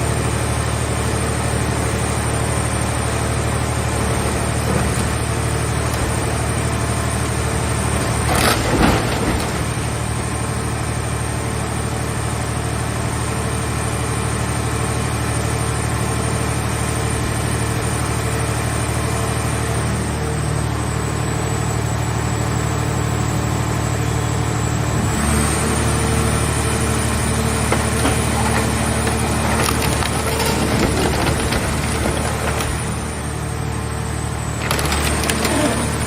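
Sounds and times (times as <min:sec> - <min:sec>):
hydraulic baler humming and whining: 0:00.0 - 0:36.0
scrap metal crunching: 0:03.8 - 0:10.8, 0:25.8 - 0:33.7, 0:34.3 - 0:36.0.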